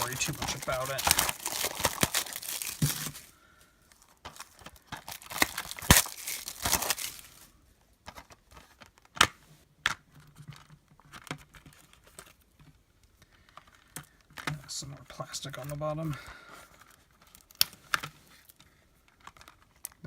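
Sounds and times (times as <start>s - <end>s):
plastic shrink-wrap tearing: 0.0s - 3.3s, 4.4s - 7.4s.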